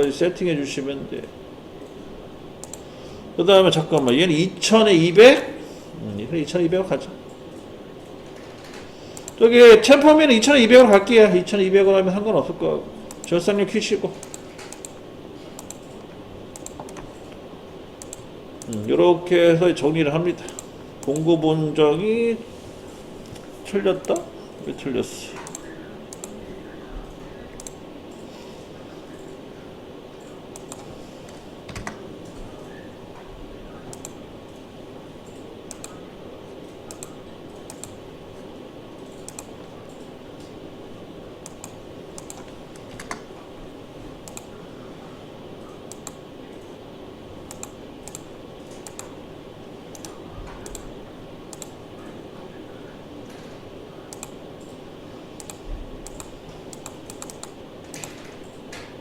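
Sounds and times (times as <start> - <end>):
steady low hum: 0.0 - 59.0
keyboard and mouse clicks: 2.6 - 2.8, 14.2 - 15.0, 15.6 - 17.4, 18.0 - 18.9, 25.4 - 26.4, 27.6 - 28.2, 30.2 - 30.9, 31.7 - 32.0, 33.9 - 34.2, 35.2 - 36.0, 36.9 - 38.0, 39.0 - 40.1, 41.4 - 43.3, 44.2 - 44.5, 45.8 - 46.7, 47.5 - 49.1, 49.9 - 50.9, 51.5 - 51.8, 54.1 - 54.8, 55.4 - 59.0.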